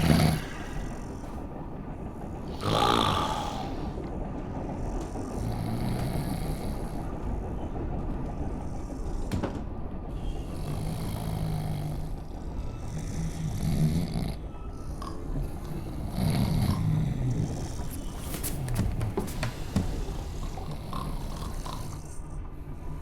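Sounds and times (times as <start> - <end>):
person snoring: 0.0 - 1.3, 2.5 - 4.0, 10.5 - 22.2
moving train rumble: 0.0 - 23.0.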